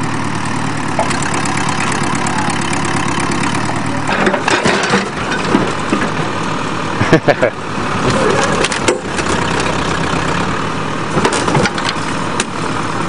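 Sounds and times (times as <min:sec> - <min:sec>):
backhoe engine running: 0:00.0 - 0:13.0
metal clanks and crunches: 0:03.5 - 0:06.4, 0:08.0 - 0:09.7, 0:11.1 - 0:12.5.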